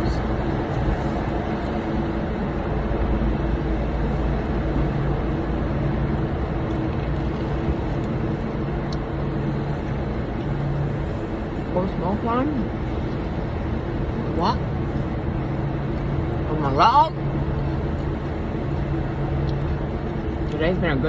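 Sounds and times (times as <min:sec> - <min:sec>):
low engine hum: 0:00.0 - 0:21.0
road rush inside car: 0:00.0 - 0:21.0.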